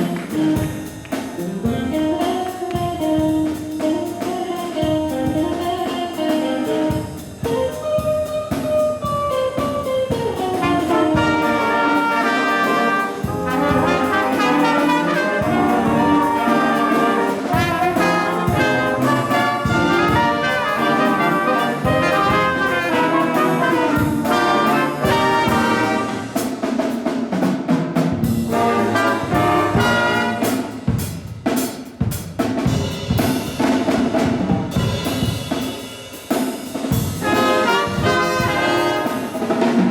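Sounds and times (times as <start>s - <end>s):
drum kit: 0.0s - 39.9s
jazz band with brass: 0.0s - 39.9s.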